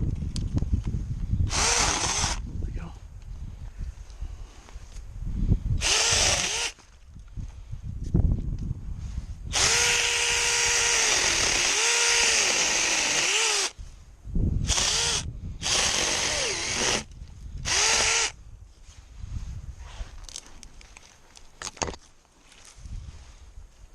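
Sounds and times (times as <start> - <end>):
electric chainsaw cutting wood: 1.5 - 2.4, 5.8 - 6.8, 9.5 - 13.8, 14.7 - 18.4.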